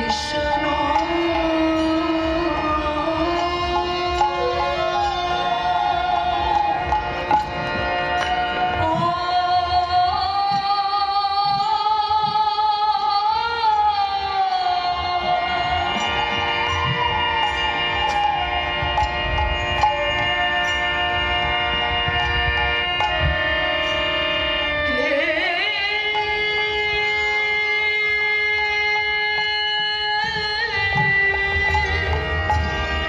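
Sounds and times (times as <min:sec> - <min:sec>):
devotional singing: 0:00.0 - 0:18.0
held accompaniment: 0:00.0 - 0:33.0.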